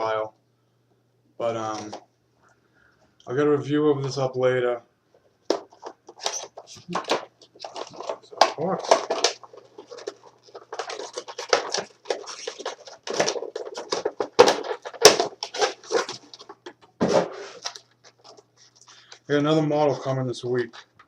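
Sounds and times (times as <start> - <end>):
rustling and tapping of packaging: 5.4 - 19.2.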